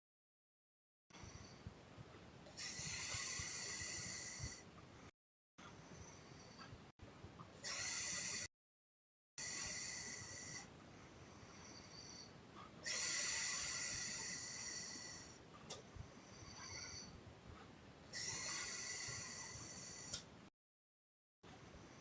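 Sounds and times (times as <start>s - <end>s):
quiet breaths: 1.1s - 8.5s, 9.4s - 20.5s, 21.5s - 22.0s
woman snoring: 2.6s - 4.6s, 7.6s - 8.5s, 9.4s - 10.7s, 11.6s - 15.4s, 18.1s - 20.2s.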